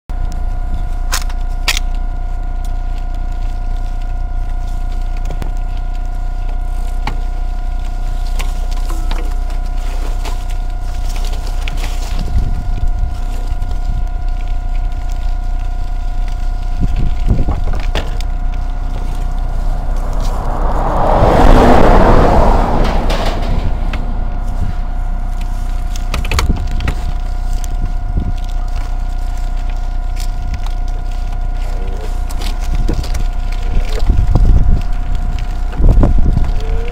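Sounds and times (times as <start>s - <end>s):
bike rattling on rough path: 2.8s - 36.9s
rushing noise: 18.3s - 26.1s.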